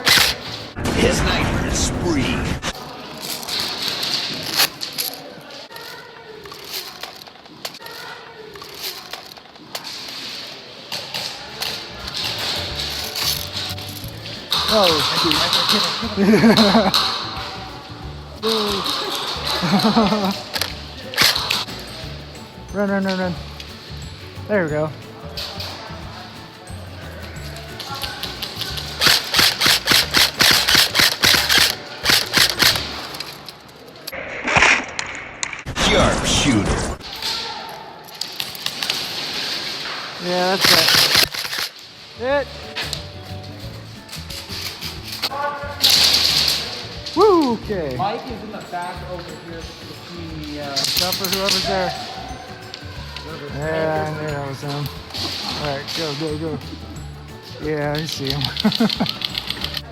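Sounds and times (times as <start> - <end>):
airsoft guns firing: 18.4 - 21.7, 28.8 - 33.2, 40.5 - 41.8.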